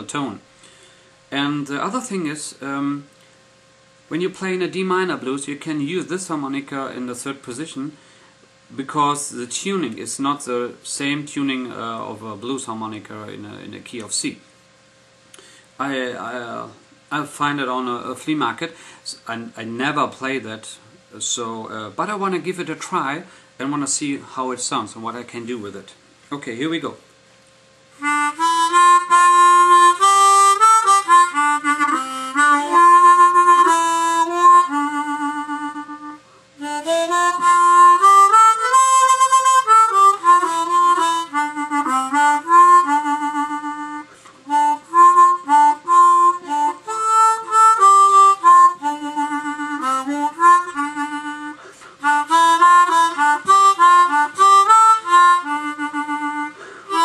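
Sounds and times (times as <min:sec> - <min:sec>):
harmonica notes and chords: 0:28.0 - 0:57.0.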